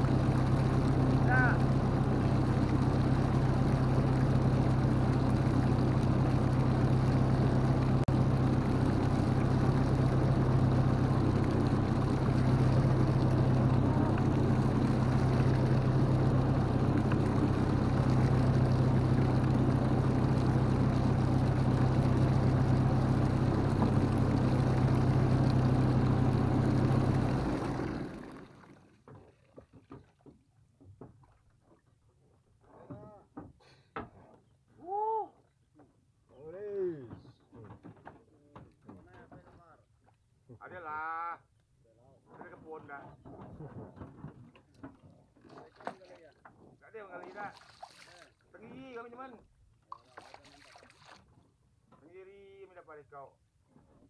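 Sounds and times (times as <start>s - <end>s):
boat engine humming: 0.0s - 29.2s.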